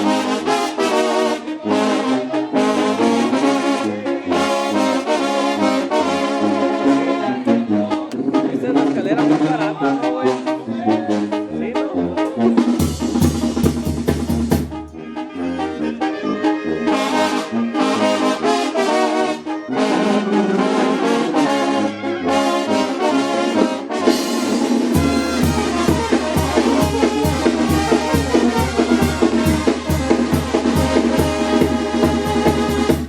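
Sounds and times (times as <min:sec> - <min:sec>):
brass band playing: 0:00.0 - 0:33.0
rhythmic bass line: 0:12.7 - 0:15.0, 0:24.1 - 0:33.0
steady drum beat: 0:12.8 - 0:15.0, 0:24.1 - 0:33.0.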